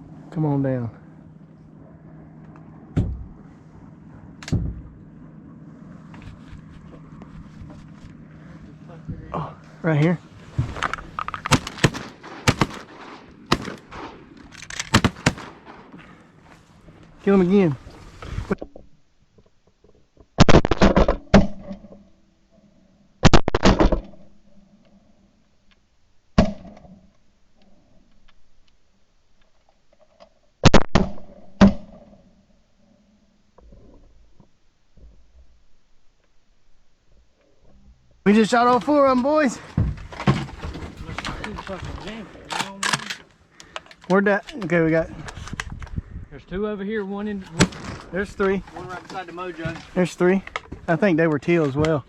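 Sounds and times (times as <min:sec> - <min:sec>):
low hum: 0:00.0 - 0:29.5, 0:31.0 - 0:52.0
shotgun shots: 0:11.4 - 0:16.4, 0:47.6 - 0:48.1
wind noise: 0:16.9 - 0:18.6, 0:39.7 - 0:42.6, 0:44.9 - 0:50.9.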